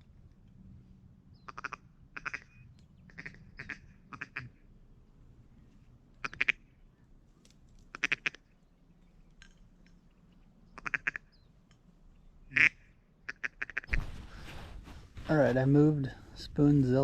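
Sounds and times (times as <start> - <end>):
ducks quacking: 1.4 - 4.6, 6.2 - 6.6, 7.9 - 8.5, 10.7 - 11.3, 12.5 - 14.7.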